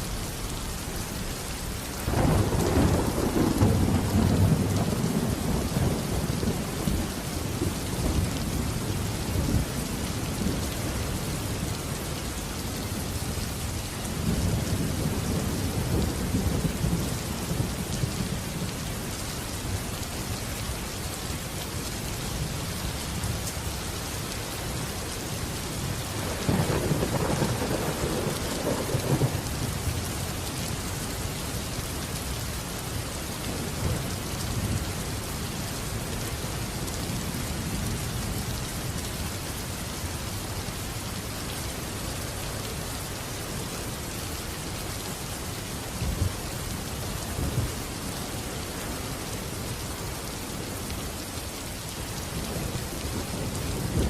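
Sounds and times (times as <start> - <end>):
steady rain falling: 0.0 - 54.0
thunder rumbling: 2.1 - 11.2, 25.5 - 29.8.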